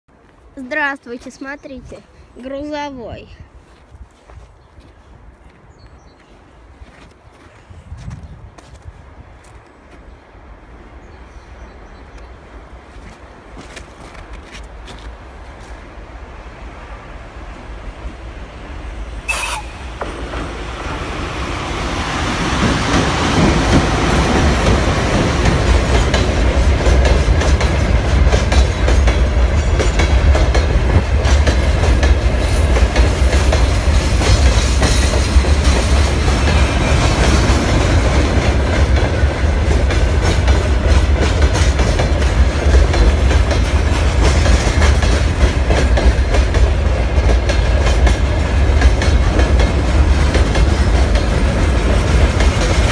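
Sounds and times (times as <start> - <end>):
freight train rumbling past: 7.7 - 52.9
wheels clicking over rail joints: 19.3 - 52.9.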